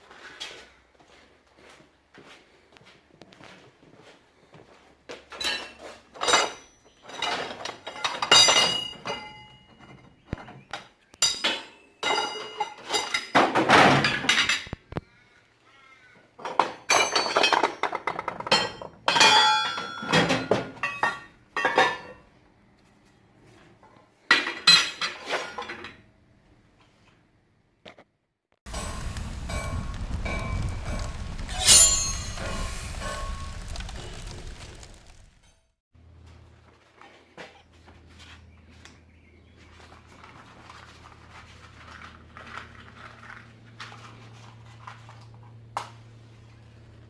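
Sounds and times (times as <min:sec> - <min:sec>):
steel pieces clanking: 0:28.7 - 0:35.6.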